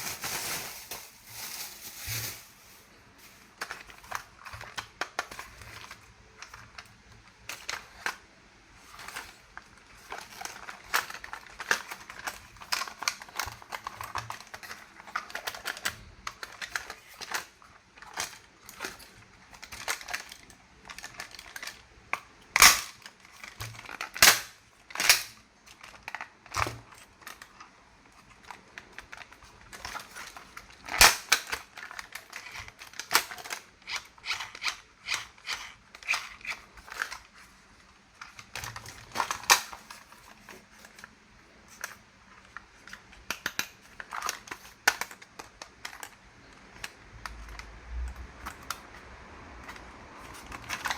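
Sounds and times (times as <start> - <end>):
plastic toy clicks and rustles: 3.5 - 50.9
sharp plastic snaps: 21.0 - 25.4, 30.8 - 37.2.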